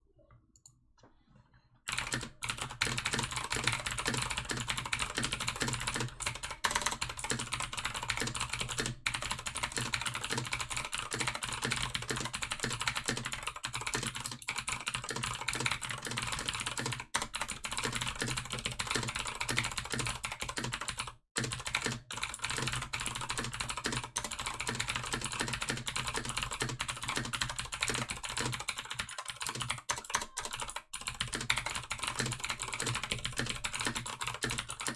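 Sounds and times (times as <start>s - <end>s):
fast typing on mechanical keyboard: 1.9s - 34.9s.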